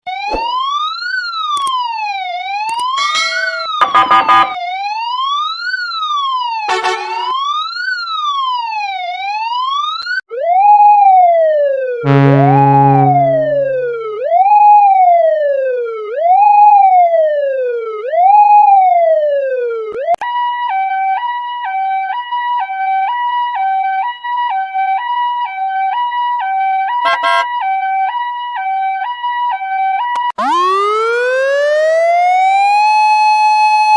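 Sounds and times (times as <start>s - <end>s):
emergency vehicle siren: 0.0s - 33.9s
low horn blast: 6.7s - 7.3s, 12.1s - 14.0s, 27.0s - 27.5s.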